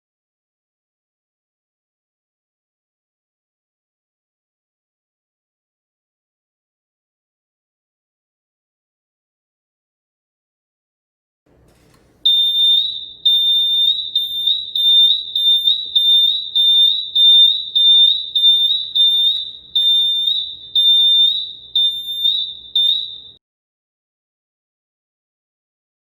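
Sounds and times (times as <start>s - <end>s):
shrill high-pitched alarm beeping: 12.3s - 23.4s.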